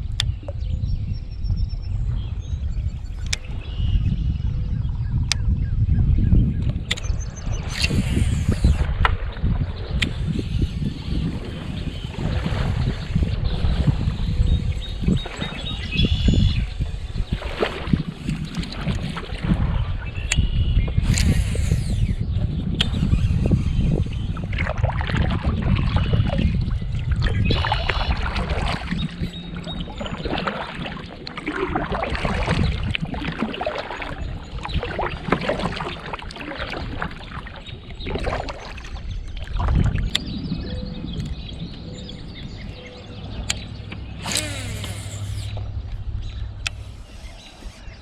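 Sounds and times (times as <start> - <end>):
water slapping against boat hull: 6.6 - 21.4, 22.2 - 40.4.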